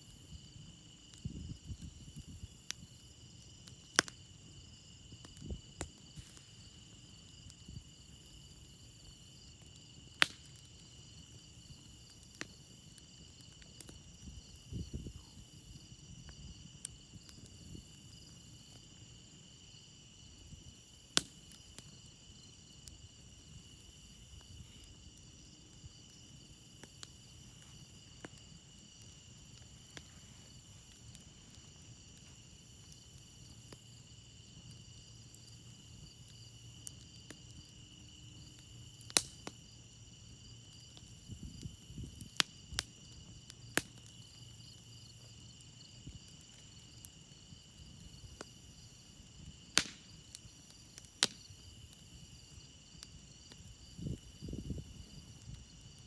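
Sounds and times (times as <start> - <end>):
campfire crackling: 0.0 - 56.0
crickets chirping: 0.0 - 56.0
loud sharp fire pops: 10.2 - 10.7, 39.1 - 39.6, 49.6 - 51.7.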